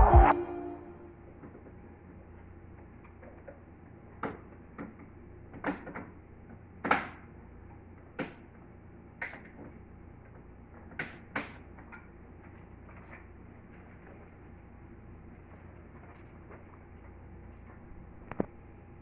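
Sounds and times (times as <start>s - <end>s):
low steady hum: 0.0s - 4.2s.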